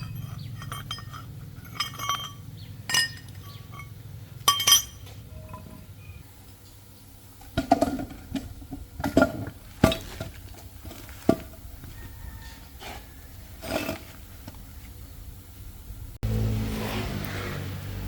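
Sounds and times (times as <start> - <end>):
metal tools clinking: 0.0 - 5.9.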